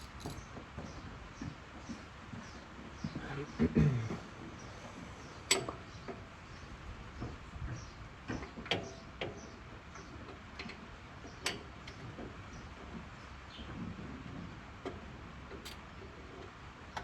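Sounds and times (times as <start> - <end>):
hand tools clicking on metal: 0.0 - 0.4.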